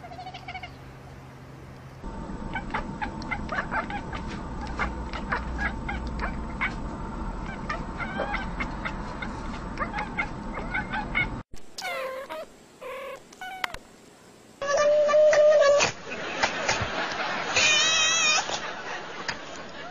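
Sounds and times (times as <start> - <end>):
cats meowing: 0.0 - 0.8, 7.4 - 13.8, 14.6 - 16.0, 17.6 - 18.6
steady background noise: 0.0 - 14.7.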